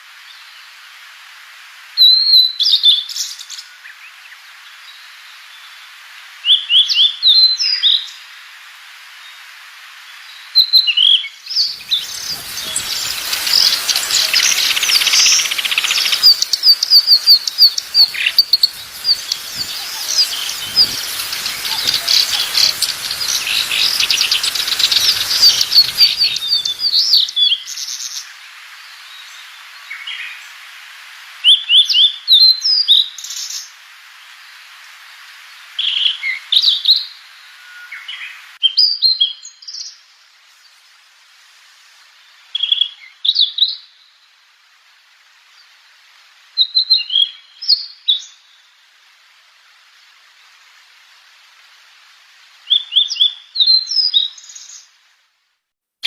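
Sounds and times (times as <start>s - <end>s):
songbird chirping and trilling: 10.3s - 28.3s.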